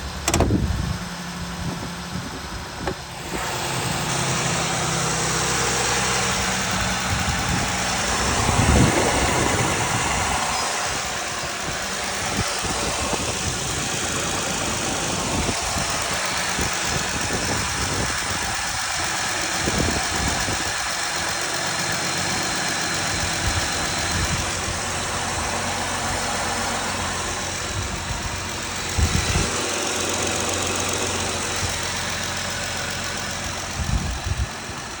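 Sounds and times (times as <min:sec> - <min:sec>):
car engine idling: 0:00.0 - 0:35.0
engine ticking: 0:00.0 - 0:35.0
loud thumps: 0:00.2 - 0:00.8, 0:02.8 - 0:03.6.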